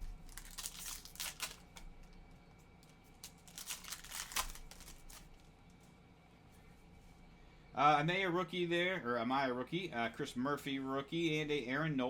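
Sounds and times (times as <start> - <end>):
faint scratchy wrapper rustles: 0.0 - 7.2.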